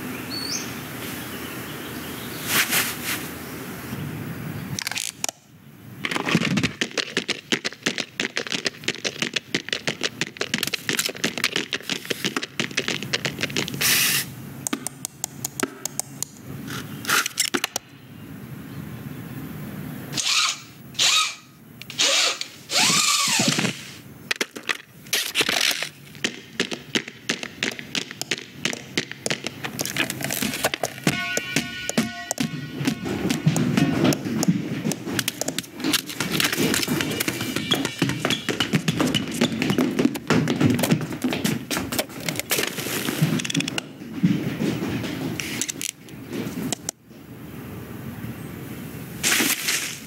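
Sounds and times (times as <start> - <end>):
noisy bursts: 0.0 - 50.0
clicks clacks and scrapes: 4.8 - 5.4, 6.0 - 17.8, 21.8 - 47.0.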